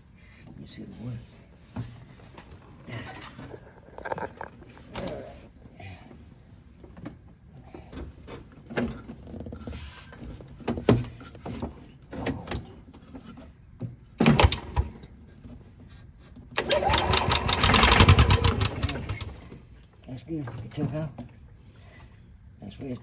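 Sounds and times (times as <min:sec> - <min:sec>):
engine cranking: 0:14.2 - 0:14.9, 0:16.6 - 0:19.6
small engine running fast: 0:16.6 - 0:19.4.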